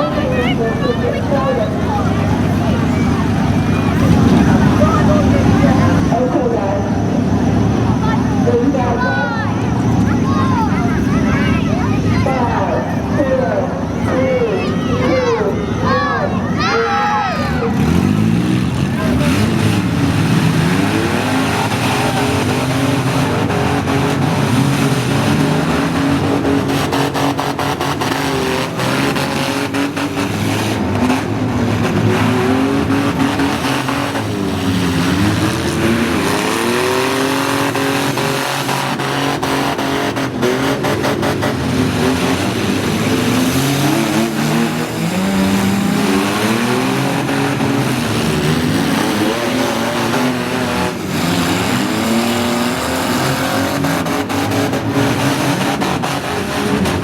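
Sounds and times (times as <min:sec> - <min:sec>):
engines revving: 0:00.0 - 0:57.0
vehicles colliding bangs: 0:00.0 - 0:57.0.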